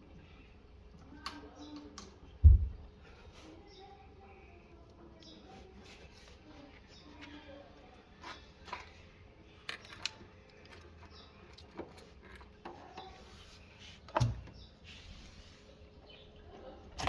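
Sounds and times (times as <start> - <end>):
objects clicking and knocking: 9.6 - 13.2.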